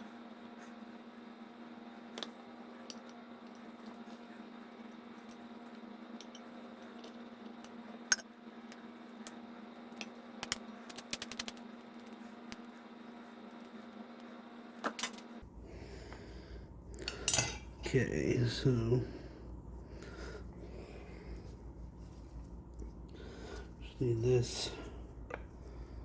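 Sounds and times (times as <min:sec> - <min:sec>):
steady electrical hum: 0:00.0 - 0:26.0
metal parts clicking and clinking: 0:17.1 - 0:18.0.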